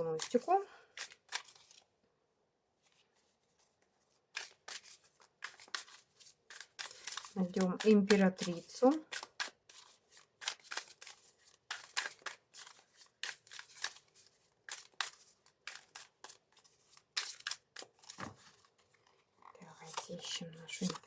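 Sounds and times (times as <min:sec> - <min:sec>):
cards flicking and sliding: 0:00.2 - 0:01.8, 0:04.4 - 0:18.6.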